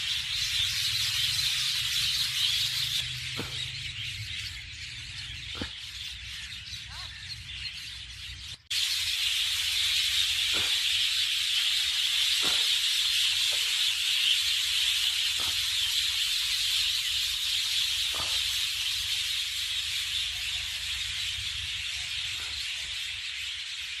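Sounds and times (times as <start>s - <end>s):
loud steady hiss: 8.7s - 17.8s.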